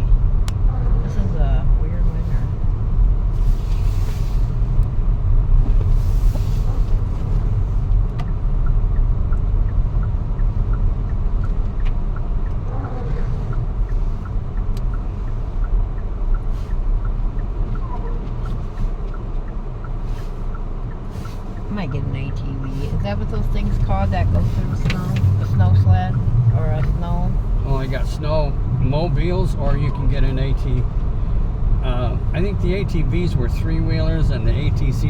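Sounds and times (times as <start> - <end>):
car engine and tyre rumble: 0.0 - 35.0
faint regular ticking: 7.0 - 35.0.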